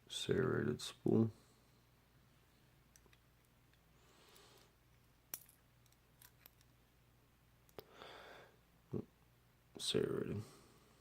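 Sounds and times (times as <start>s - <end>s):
small metal clicks: 5.3s - 6.7s.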